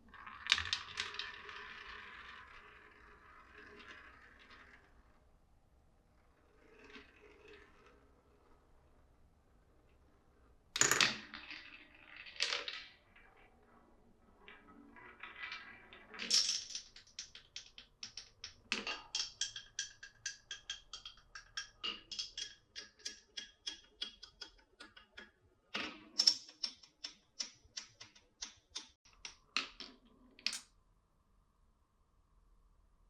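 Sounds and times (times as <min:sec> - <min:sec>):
marbles clattering on wooden run: 0:00.2 - 0:04.9, 0:15.0 - 0:29.8.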